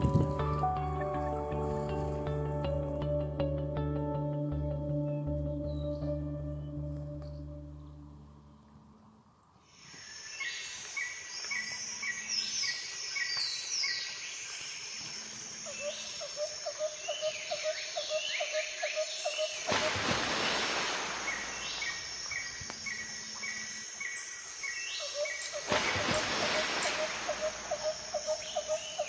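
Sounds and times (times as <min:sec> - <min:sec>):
songbirds singing: 0:09.9 - 0:19.8, 0:21.1 - 0:29.0.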